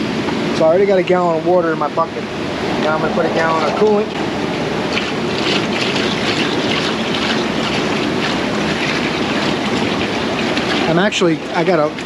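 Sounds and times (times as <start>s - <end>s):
liquid pouring into a bucket: 5.0s - 12.0s.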